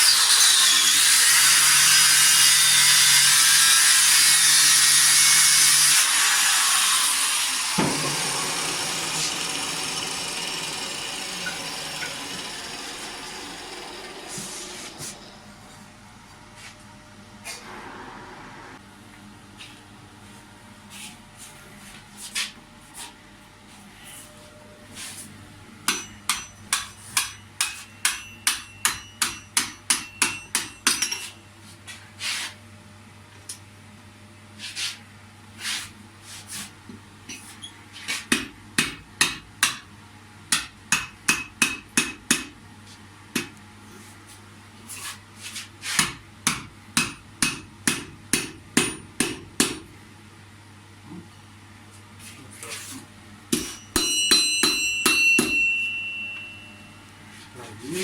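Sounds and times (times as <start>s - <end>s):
hammer striking metal: 25.9s - 31.3s, 38.3s - 39.9s, 40.5s - 42.5s, 46.0s - 49.8s, 53.5s - 56.7s.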